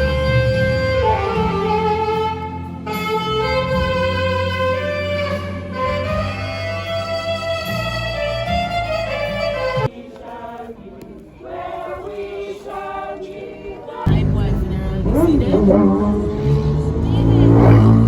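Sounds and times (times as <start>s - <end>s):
steady bass: 0.0s - 9.9s, 14.1s - 18.0s
string-like melody: 0.0s - 18.0s.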